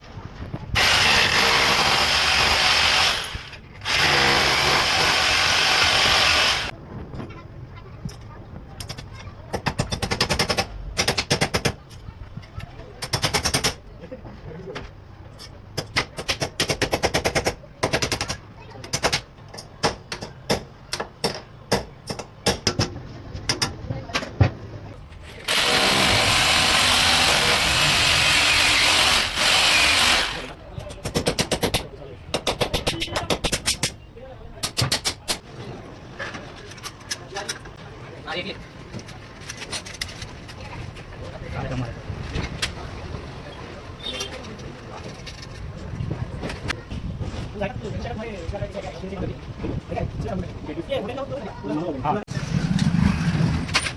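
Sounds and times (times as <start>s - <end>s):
power drill running: 0.8s - 6.7s, 25.5s - 30.6s.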